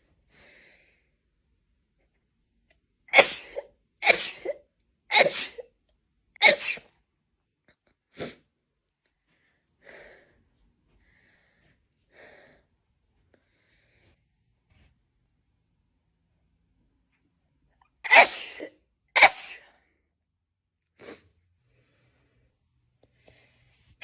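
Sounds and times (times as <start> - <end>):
person sneezing: 3.1 - 5.6, 6.4 - 6.9, 18.1 - 19.7.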